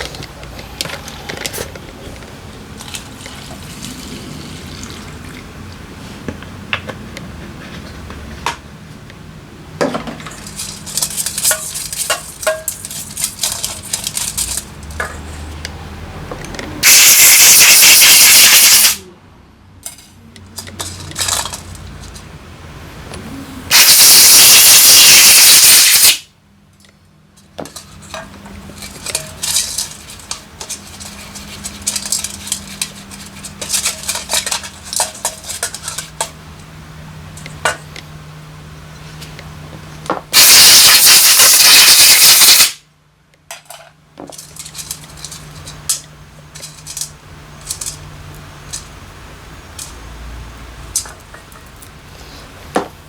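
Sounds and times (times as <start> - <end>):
metal parts clinking: 10.2 - 15.3, 19.8 - 22.3, 27.6 - 36.3, 43.5 - 48.0
pressurised spray hissing: 16.8 - 19.0, 23.5 - 26.2, 40.4 - 42.8.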